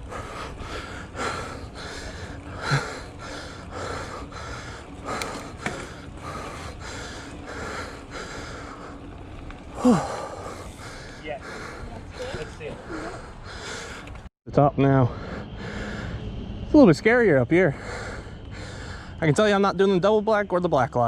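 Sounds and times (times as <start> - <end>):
person breathing hard: 0.0 - 9.1, 9.7 - 14.2, 15.1 - 16.2, 17.8 - 19.2.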